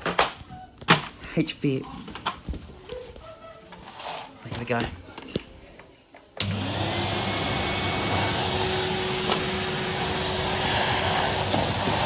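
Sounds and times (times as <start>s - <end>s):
vacuum cleaner motor whining: 6.4s - 12.0s.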